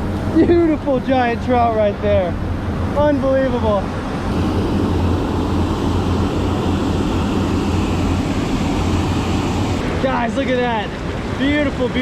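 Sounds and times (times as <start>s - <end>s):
low rumble: 3.9s - 10.1s.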